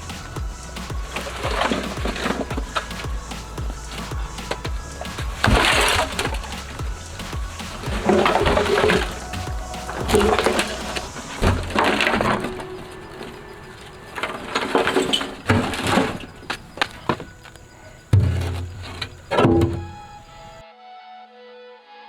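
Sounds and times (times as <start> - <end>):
heavy thud: 0.0 - 12.6
knocks and clattering impacts: 0.0 - 20.6.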